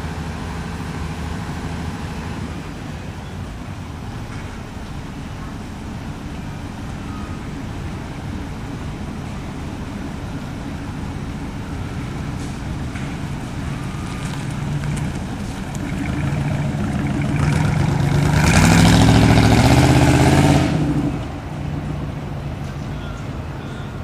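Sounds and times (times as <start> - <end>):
car engine driving past: 4.2 - 23.2.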